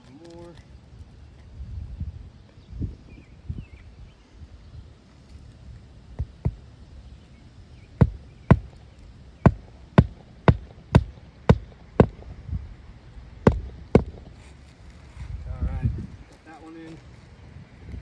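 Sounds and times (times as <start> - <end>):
hammer striking nails: 8.0 - 8.8, 9.5 - 12.2, 13.5 - 14.4.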